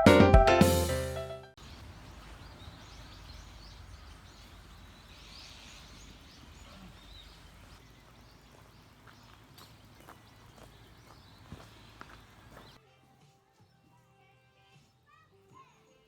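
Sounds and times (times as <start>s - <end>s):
background music: 0.0s - 1.6s, 12.8s - 16.0s
small birds chirping: 1.6s - 12.8s.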